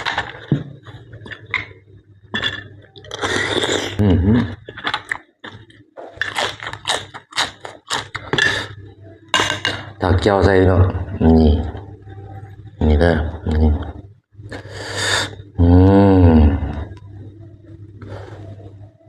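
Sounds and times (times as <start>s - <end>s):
wet chewing and smacking: 4.6s - 8.3s.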